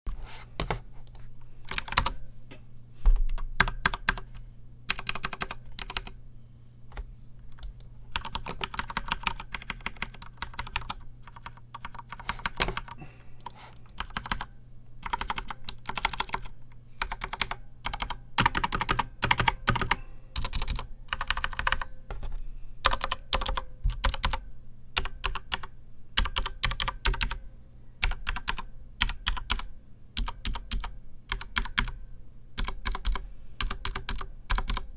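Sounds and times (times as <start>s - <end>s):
mechanical keyboard typing: 0.6s - 2.2s, 3.4s - 4.3s, 4.9s - 6.2s, 7.6s - 13.0s, 13.8s - 21.9s, 22.8s - 24.4s, 25.0s - 27.4s, 28.0s - 32.0s, 32.6s - 34.9s.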